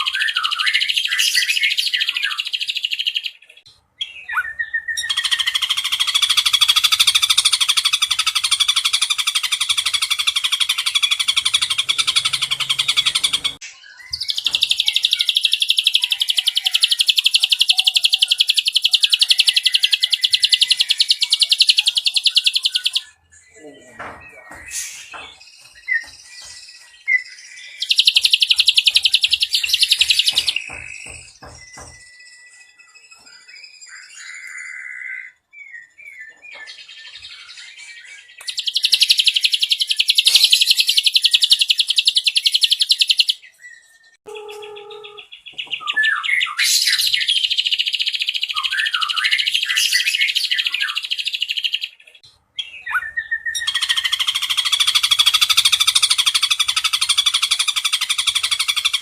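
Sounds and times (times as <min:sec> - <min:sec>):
bird chirps and calls: 0:00.0 - 0:59.0.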